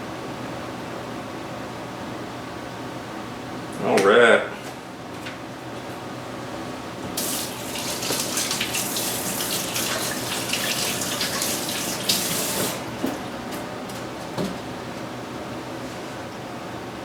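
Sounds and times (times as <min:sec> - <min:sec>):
tap water running into sink: 0:07.2 - 0:13.7.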